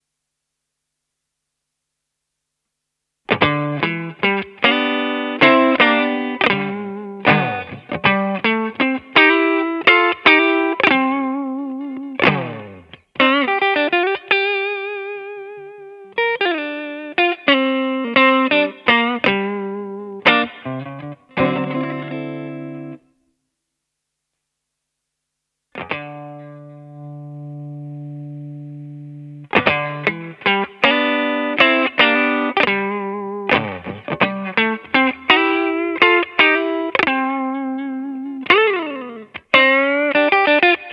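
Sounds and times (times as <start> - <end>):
electric guitar lead: 3.3 - 23.1, 25.8 - 40.9.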